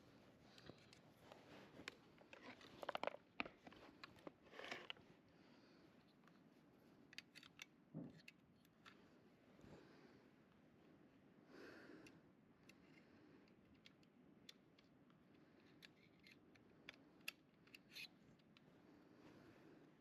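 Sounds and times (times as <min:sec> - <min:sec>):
small clicks of tools: 0:07.1 - 0:09.0, 0:12.0 - 0:18.7.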